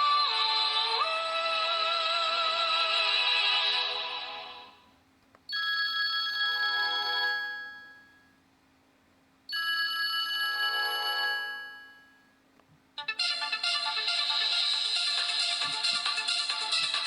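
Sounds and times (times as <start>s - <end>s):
mobile phone ringtone: 5.5s - 8.3s, 9.5s - 12.4s
busier ringtone: 5.5s - 8.4s, 9.5s - 12.4s.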